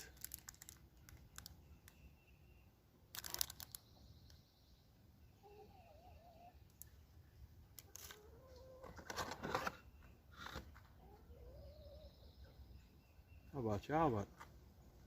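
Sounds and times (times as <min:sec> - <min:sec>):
plastic packaging crinkling: 0:00.0 - 0:01.6, 0:03.1 - 0:03.8.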